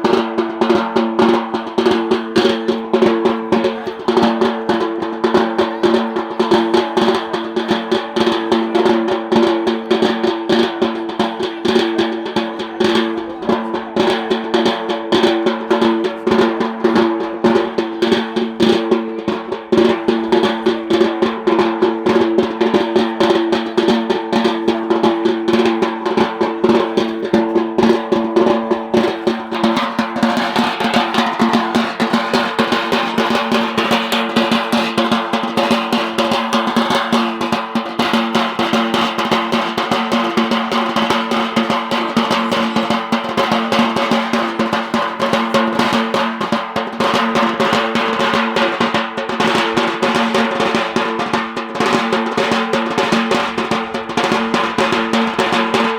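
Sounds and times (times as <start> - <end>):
fast continuous drumming: 0.0 - 55.9.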